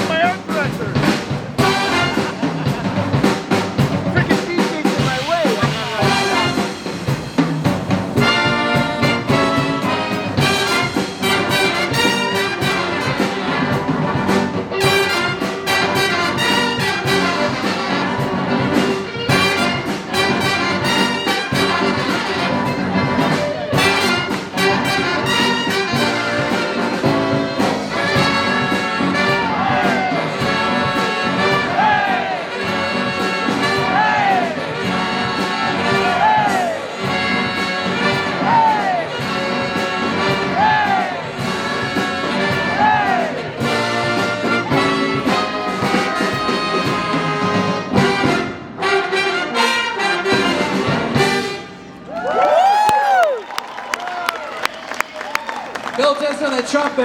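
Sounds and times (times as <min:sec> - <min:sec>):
trumpets and trombones chords: 0:00.0 - 0:52.1
jazz big band playing: 0:00.0 - 0:53.4.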